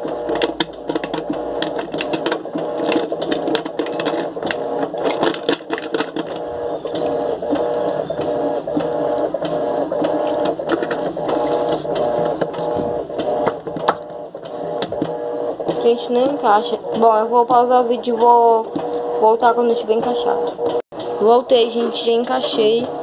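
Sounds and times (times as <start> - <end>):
plastic clicks and knocks: 0.0 - 11.4, 12.4 - 17.6
washing machine motor humming: 0.0 - 23.0.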